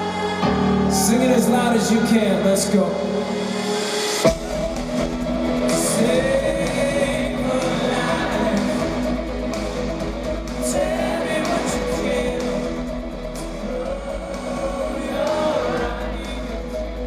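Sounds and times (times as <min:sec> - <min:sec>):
live rock band playing: 0:00.0 - 0:17.0
person singing: 0:05.6 - 0:10.0, 0:10.6 - 0:17.0.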